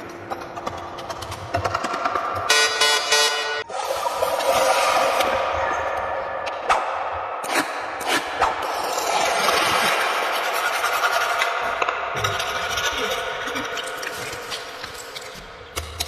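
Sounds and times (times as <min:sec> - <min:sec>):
hand tool scraping a pipe: 0:09.6 - 0:15.9.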